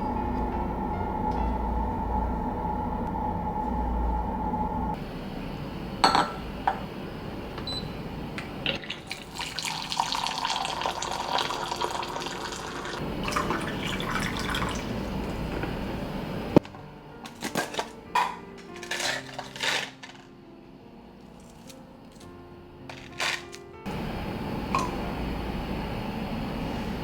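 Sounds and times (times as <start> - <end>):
low rumble: 0.0 - 5.0
steady hum: 0.0 - 9.4, 12.9 - 17.2, 22.0 - 27.0
water running and splashing: 8.8 - 15.5.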